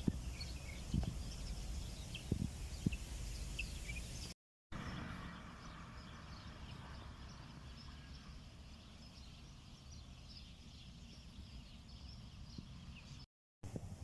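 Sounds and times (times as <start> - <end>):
low wind rumble on microphone: 0.0 - 4.3, 13.6 - 14.0.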